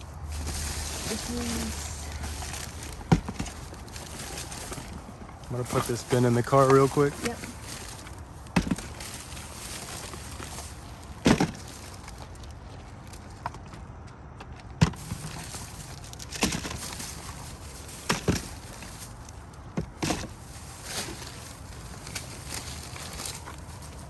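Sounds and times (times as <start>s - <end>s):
knocks and thuds of objects: 2.3s - 6.0s, 6.6s - 12.2s, 14.6s - 21.4s.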